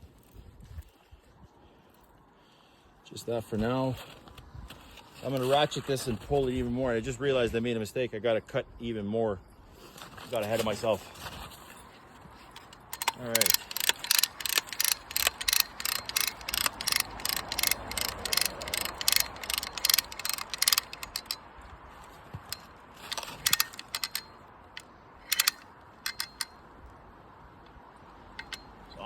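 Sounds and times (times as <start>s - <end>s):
hand ratchet clicking: 12.6s - 21.5s, 22.4s - 26.6s, 28.4s - 28.7s.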